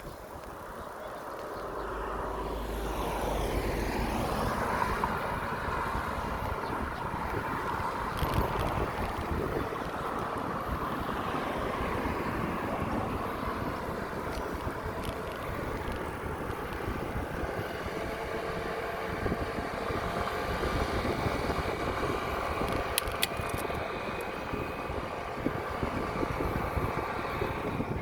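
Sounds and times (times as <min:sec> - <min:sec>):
road traffic rumble: 0:00.0 - 0:28.0
wind rushing over microphone: 0:00.0 - 0:28.0
sharp clicks: 0:22.6 - 0:24.3.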